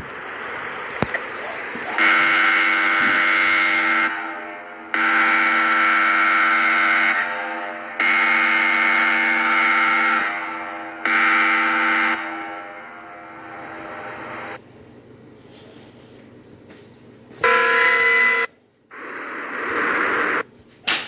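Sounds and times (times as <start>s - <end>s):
loud horn blasts: 1.9s - 14.6s, 17.4s - 18.5s.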